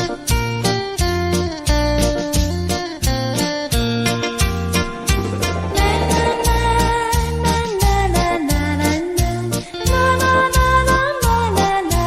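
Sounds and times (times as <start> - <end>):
bass and steady beat: 0.0 - 12.0
electronic keyboard melody: 1.3 - 9.6.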